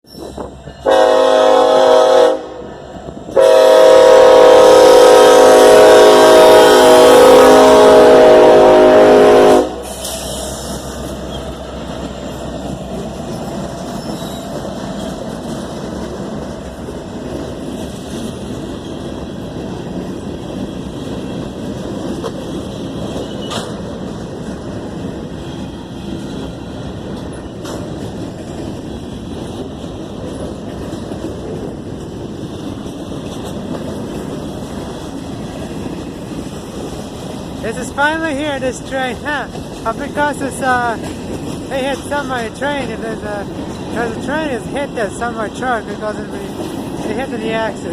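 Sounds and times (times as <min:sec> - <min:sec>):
freight train rumbling past: 0:00.0 - 0:47.9
locomotive horn: 0:00.8 - 0:10.2.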